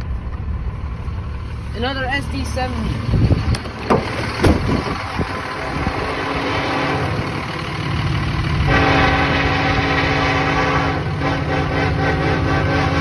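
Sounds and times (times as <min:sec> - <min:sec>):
diesel locomotive rumbling: 0:00.0 - 0:13.0
sharp knocks: 0:03.6 - 0:04.6
locomotive air horn: 0:05.7 - 0:07.8, 0:08.6 - 0:13.0.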